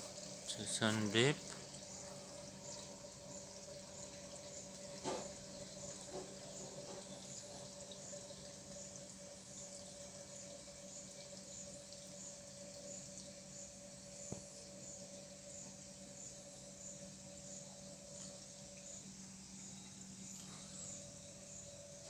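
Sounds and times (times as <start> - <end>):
electric pump humming: 0.0 - 22.0
water running out: 0.1 - 9.2.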